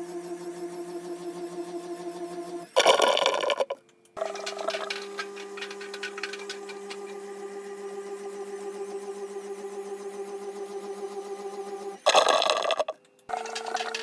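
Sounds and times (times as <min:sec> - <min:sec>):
washing machine hum: 0:02.8 - 0:07.3, 0:12.1 - 0:14.0
rapid ticking: 0:04.2 - 0:07.1.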